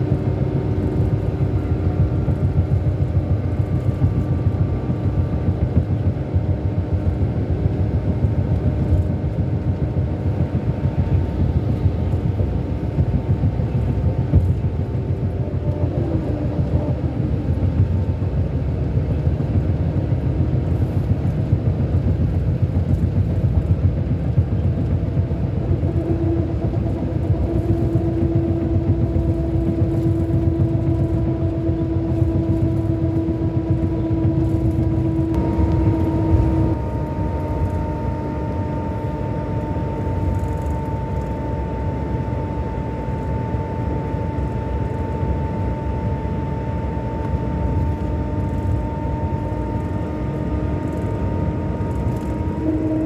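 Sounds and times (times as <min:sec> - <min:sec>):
diesel engine rumble and whine: 0:00.0 - 0:53.0.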